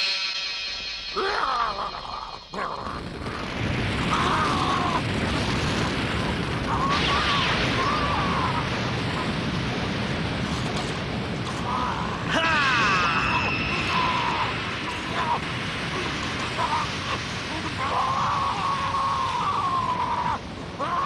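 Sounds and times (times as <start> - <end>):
wavering creature cry: 1.2 - 3.5
shrill wavering cries: 12.0 - 15.4.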